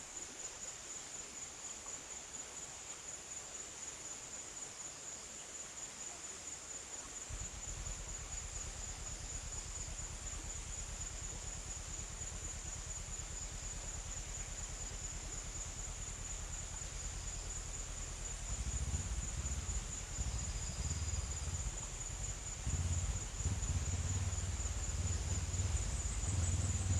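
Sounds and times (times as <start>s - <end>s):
low rumble: 7.3s - 26.9s
high-pitched insect drone: 7.4s - 26.9s.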